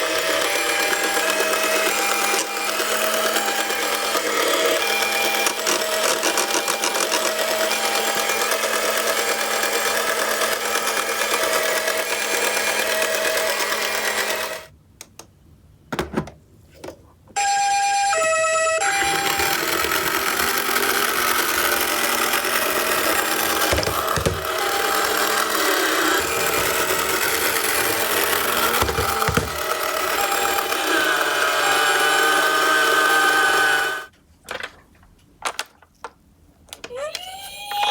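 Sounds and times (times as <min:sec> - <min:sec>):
two-note ambulance siren: 0:17.4 - 0:20.1
toy cars rattling down cardboard: 0:18.9 - 0:34.8.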